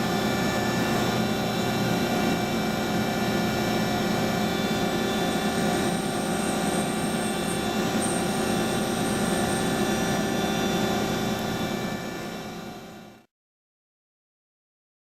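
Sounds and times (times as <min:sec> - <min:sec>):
machine whine of held tones: 0:00.0 - 0:13.3
milling machine cutting metal: 0:03.4 - 0:12.4.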